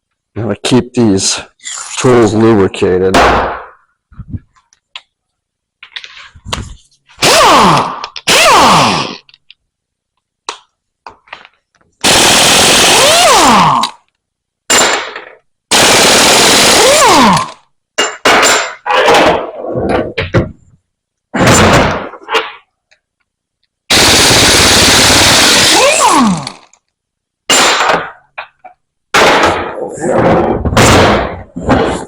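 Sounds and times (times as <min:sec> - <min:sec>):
pneumatic impact wrench rattling: 0:07.2 - 0:09.4, 0:12.0 - 0:14.0, 0:14.7 - 0:17.6, 0:23.9 - 0:26.8.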